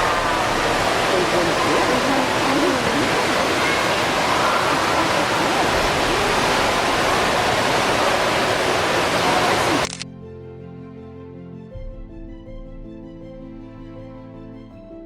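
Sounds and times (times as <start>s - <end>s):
rushing water: 0.0s - 10.0s
soft music with held notes: 10.0s - 15.0s.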